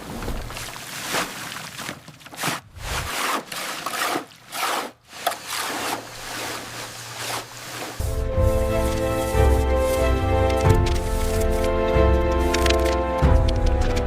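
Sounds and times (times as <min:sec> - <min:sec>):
rough scraping strokes: 0:02.3 - 0:12.6.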